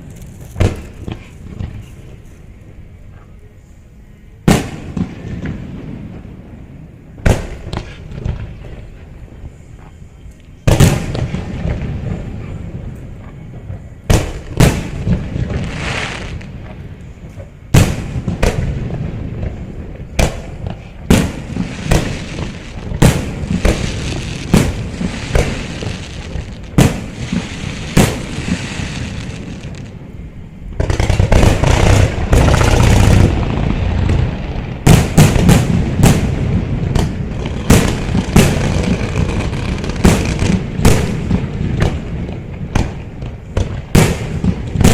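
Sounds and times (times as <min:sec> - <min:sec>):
fireworks crackling: 0:00.0 - 0:03.0, 0:10.6 - 0:44.9
firework shells booming: 0:13.4 - 0:44.9.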